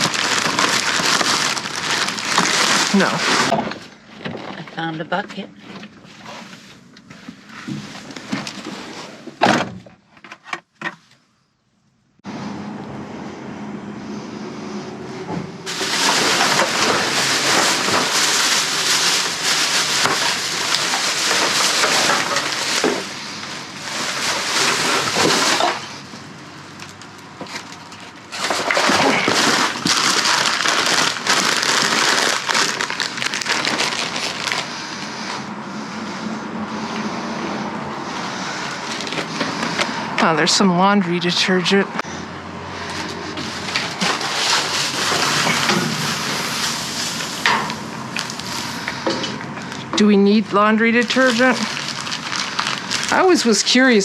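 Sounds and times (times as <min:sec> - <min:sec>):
plastic bags crinkling in dumpster: 0:00.0 - 0:04.8, 0:05.6 - 0:09.4, 0:15.7 - 0:35.5, 0:38.4 - 0:40.6, 0:42.9 - 0:54.0.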